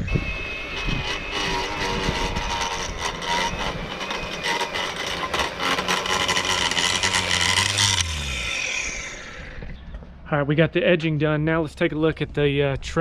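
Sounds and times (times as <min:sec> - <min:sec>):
edger motor whine: 0:00.0 - 0:10.2.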